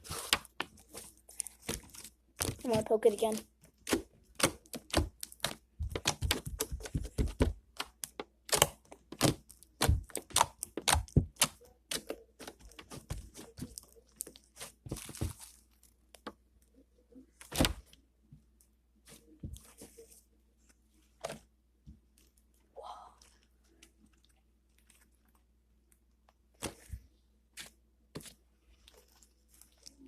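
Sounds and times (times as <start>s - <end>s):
slime clicking and popping: 3.7s - 15.3s.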